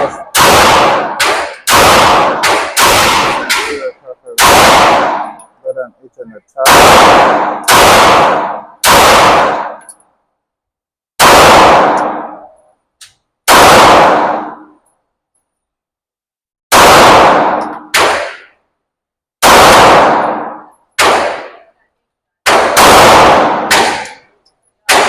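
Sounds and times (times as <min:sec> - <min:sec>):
pistol shots echoing indoors: 0:00.1 - 0:05.5, 0:06.6 - 0:10.0, 0:11.2 - 0:12.8, 0:13.4 - 0:14.9, 0:16.7 - 0:18.8, 0:19.4 - 0:21.8, 0:22.4 - 0:25.0.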